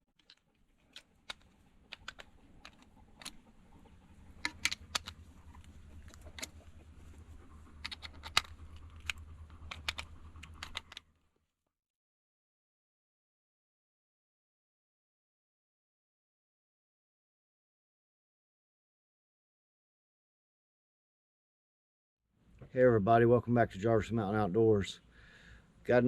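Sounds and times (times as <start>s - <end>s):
low steady hum: 0.2s - 11.2s.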